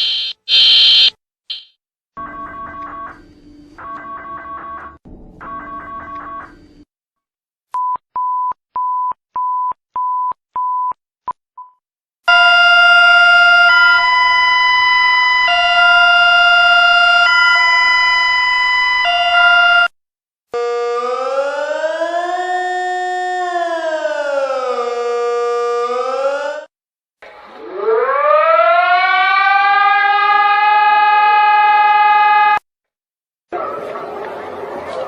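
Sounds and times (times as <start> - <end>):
short electronic beeps: 0.0 - 1.8
rising siren-like tone: 27.4 - 32.6.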